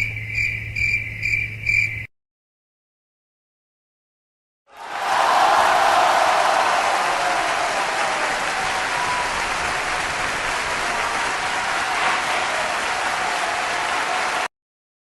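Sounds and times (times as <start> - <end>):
crowd applauding and cheering: 4.7 - 14.5.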